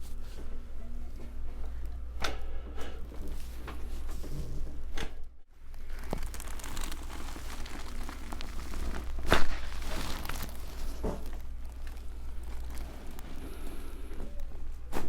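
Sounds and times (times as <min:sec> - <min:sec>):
crinkling handling noise: 0:05.5 - 0:15.0.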